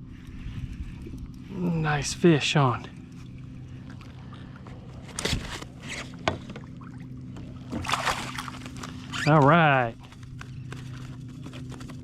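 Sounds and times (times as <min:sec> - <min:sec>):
faint steady hum: 0:00.0 - 0:12.0
water splashing against kayak: 0:03.2 - 0:09.4.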